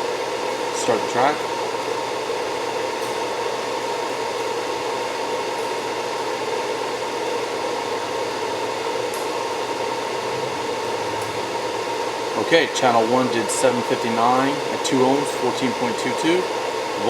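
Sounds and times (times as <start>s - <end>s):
cooling fans whirring: 0.0s - 17.0s
faint high hum: 9.7s - 14.6s.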